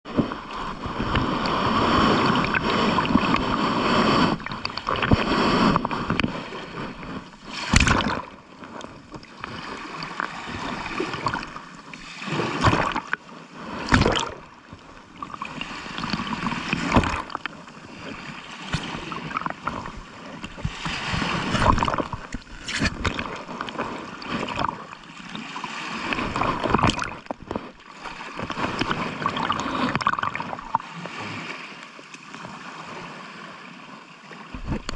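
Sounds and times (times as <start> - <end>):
ocean waves washing on shore: 0.1 - 34.9
waves splashing crashes: 0.2 - 8.4, 15.5 - 31.8.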